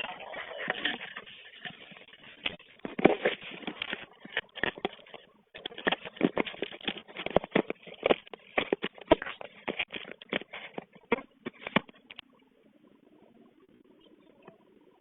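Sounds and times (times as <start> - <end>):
cards rustling and clicking: 0.6 - 12.2.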